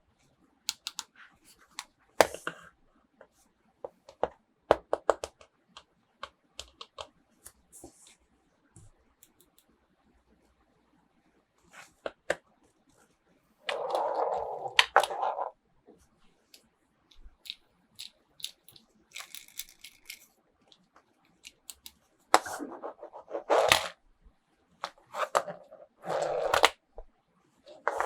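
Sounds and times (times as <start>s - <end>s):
small sharp clicks and taps: 0.7s - 1.1s, 4.1s - 7.6s, 8.8s - 9.7s, 16.6s - 22.0s.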